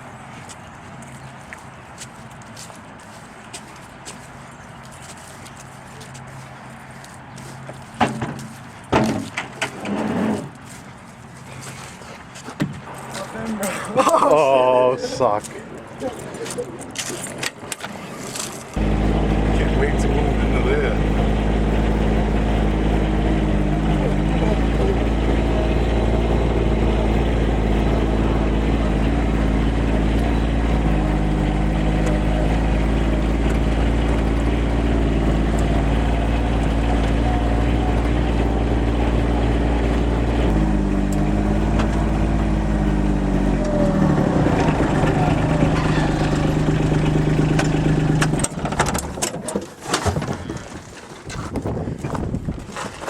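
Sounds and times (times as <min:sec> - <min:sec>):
vehicle engine running: 0:18.7 - 0:49.4
sharp clicks and knocks: 0:45.7 - 0:50.4.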